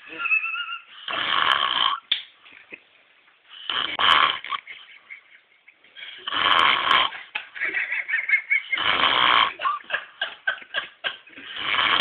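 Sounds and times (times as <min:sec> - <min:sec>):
man snoring loudly: 0:01.1 - 0:02.0, 0:03.7 - 0:04.5, 0:06.3 - 0:07.1, 0:08.8 - 0:09.6, 0:11.4 - 0:12.0.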